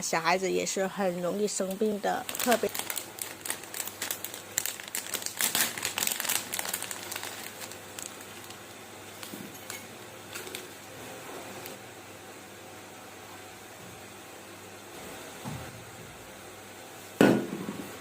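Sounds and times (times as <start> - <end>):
crinkling and crackling: 1.5 - 11.8.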